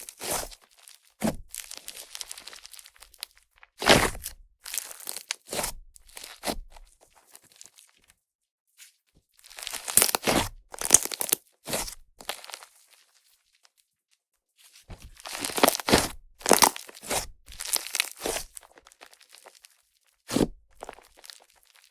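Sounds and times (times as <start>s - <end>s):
slime squelching and crackling: 0.0s - 8.1s, 9.4s - 13.8s, 14.7s - 21.9s.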